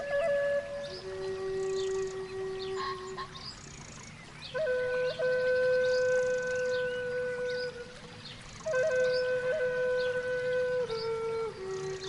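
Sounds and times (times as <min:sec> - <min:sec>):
bamboo flute playing: 0:00.0 - 0:12.0.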